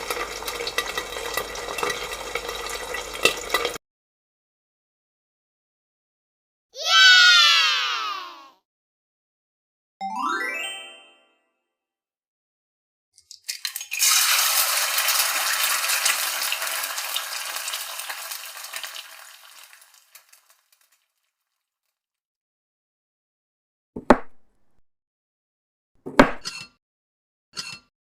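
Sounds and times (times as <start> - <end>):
food sizzling in a pan: 0.0 - 3.8, 13.5 - 21.1.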